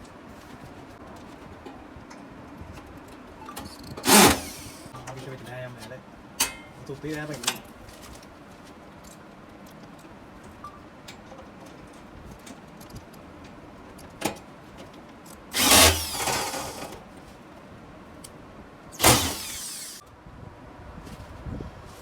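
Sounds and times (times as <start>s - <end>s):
power tool bursts: 4.0s - 4.9s, 15.5s - 17.0s, 19.0s - 20.0s.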